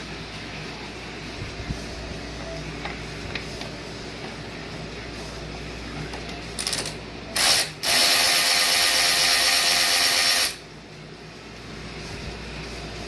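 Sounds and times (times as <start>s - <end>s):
power ratchet running: 6.6s - 10.6s.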